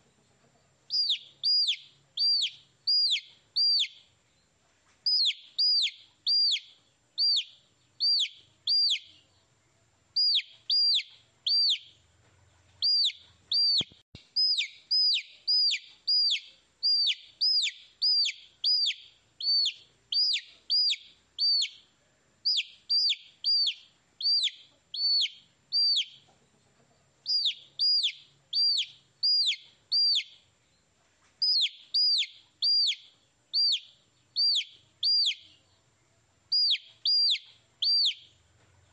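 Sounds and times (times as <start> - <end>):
baby chicks peeping: 0.0 - 38.9
sharp click: 13.7 - 14.3.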